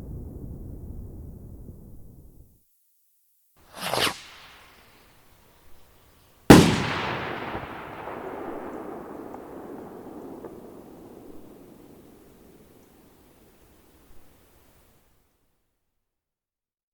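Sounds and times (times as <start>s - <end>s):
rushing whoosh: 3.8s - 5.0s
loud explosion: 6.5s - 12.8s.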